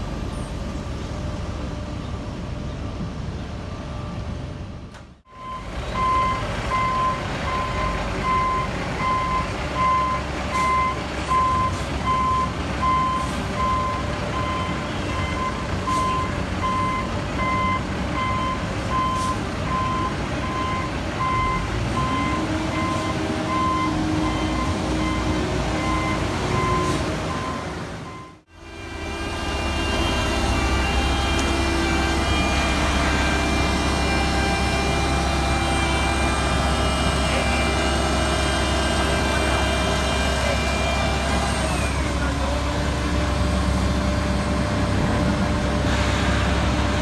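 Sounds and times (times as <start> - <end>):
diesel engines running: 0.0 - 47.0
back-up alarm beeping: 5.3 - 28.4.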